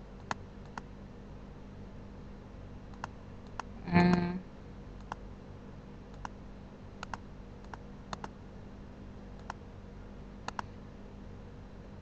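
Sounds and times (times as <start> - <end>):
faint steady hum: 0.0 - 12.0
computer mouse clicking: 0.2 - 0.9, 2.9 - 3.7, 5.0 - 5.2, 6.1 - 6.4, 7.0 - 8.3, 9.4 - 9.6, 10.4 - 10.7.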